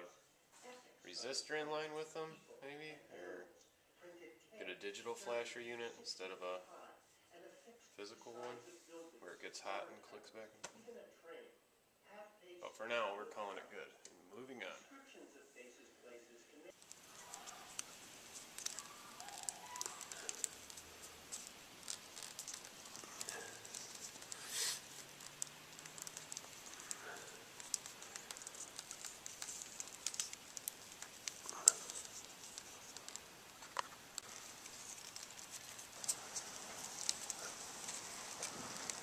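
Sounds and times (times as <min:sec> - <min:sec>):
small parts clicking and rustling: 0:16.7 - 0:39.0.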